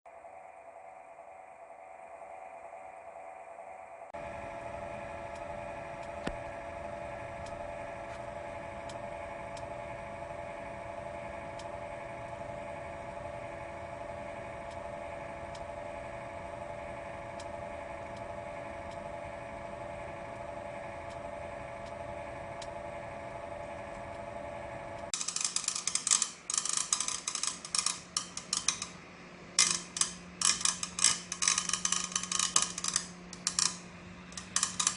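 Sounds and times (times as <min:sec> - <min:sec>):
cooling fan whine: 0:00.1 - 0:34.9
fan rattling clatter: 0:25.2 - 0:34.9.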